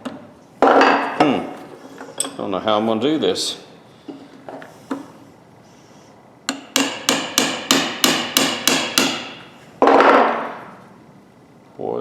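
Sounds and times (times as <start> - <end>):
hammer striking metal pliers: 6.5 - 9.4.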